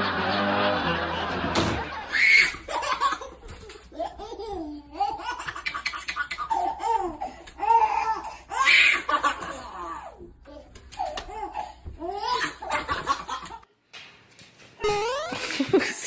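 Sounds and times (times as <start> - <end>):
young child laughing: 14.8 - 16.0.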